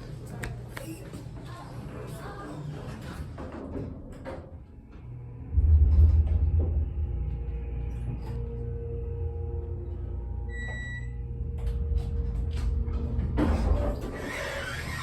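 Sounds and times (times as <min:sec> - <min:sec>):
elevator running low rumble: 0:04.8 - 0:15.0.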